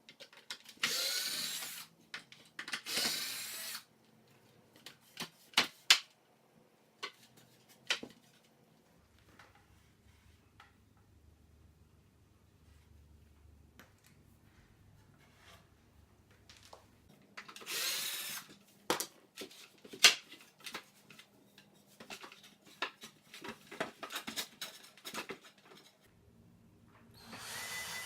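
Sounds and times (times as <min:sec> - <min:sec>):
power drill running: 0:00.8 - 0:01.8, 0:02.8 - 0:03.8, 0:17.6 - 0:18.5, 0:27.2 - 0:28.0.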